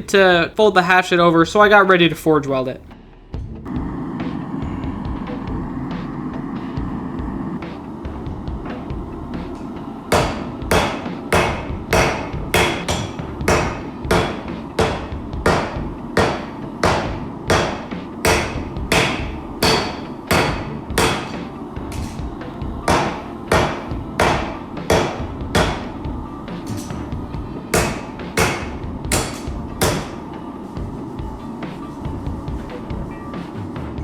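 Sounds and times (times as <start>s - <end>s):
low rumble: 3.2s - 10.7s
hammer striking steel on anvil: 10.1s - 22.3s, 22.9s - 27.1s, 27.7s - 30.2s.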